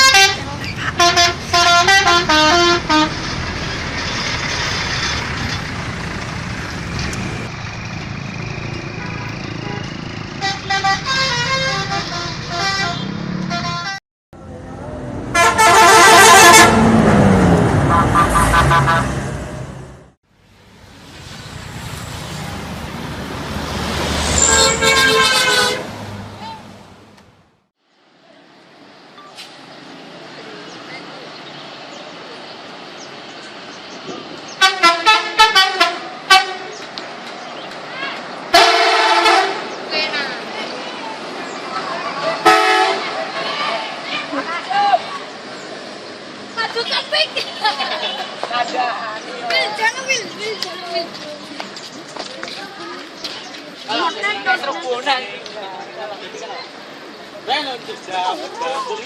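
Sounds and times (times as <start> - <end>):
multi-tone musical bus horn: 0.0 - 3.2, 9.0 - 14.0, 15.3 - 17.0, 24.4 - 26.3, 34.6 - 36.7, 38.5 - 39.7, 42.4 - 43.2
traffic noise: 0.0 - 59.0.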